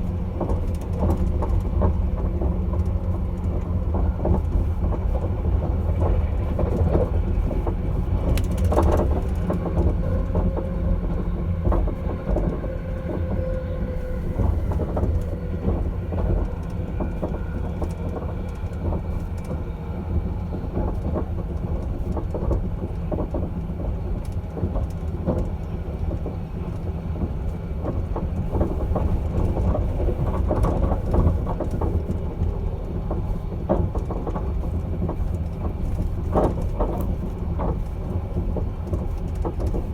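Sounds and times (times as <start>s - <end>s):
train rattles and knocks: 0.0s - 39.9s
train rumbling: 0.0s - 39.9s.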